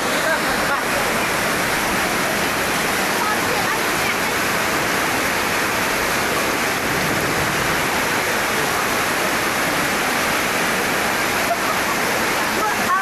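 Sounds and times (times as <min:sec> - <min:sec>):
floodwater rushing: 0:00.0 - 0:13.0.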